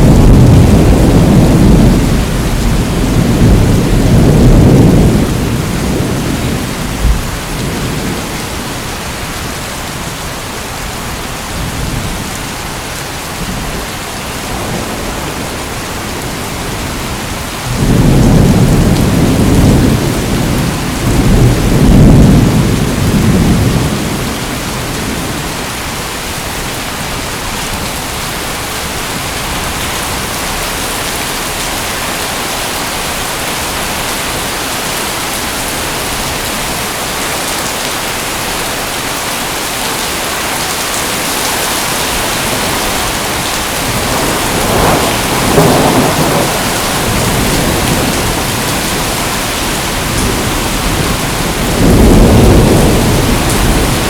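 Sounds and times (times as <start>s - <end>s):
thunder rumbling: 0.0s - 10.0s, 14.5s - 31.9s, 40.8s - 54.0s
heavy rain falling: 0.0s - 54.0s.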